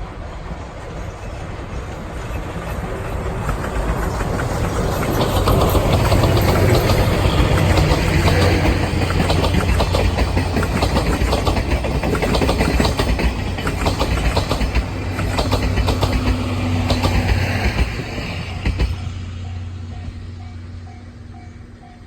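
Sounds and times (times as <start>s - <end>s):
train wheels clicking over rail joints: 0.0s - 22.0s.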